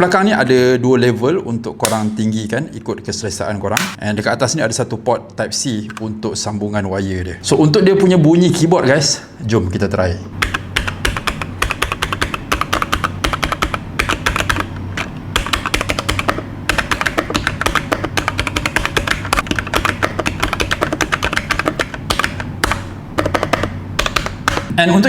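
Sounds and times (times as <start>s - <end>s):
mechanical keyboard keystroke clacks: 10.4s - 24.7s.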